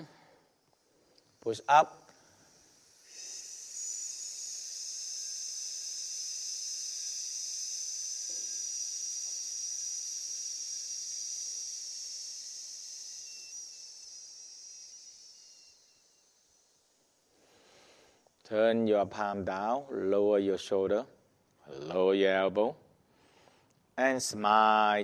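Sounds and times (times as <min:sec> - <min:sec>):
person hissing through teeth: 0:02.6 - 0:09.5.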